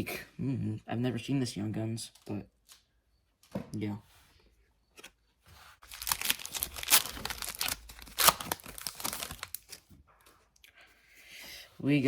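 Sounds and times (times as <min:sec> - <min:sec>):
foil wrapper crinkling: 0:05.8 - 0:09.9
sharp foil rips: 0:05.9 - 0:09.8.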